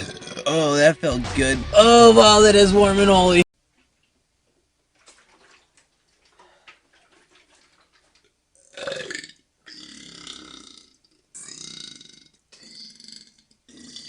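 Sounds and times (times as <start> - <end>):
man burping: 0.0 - 0.7, 8.6 - 14.0.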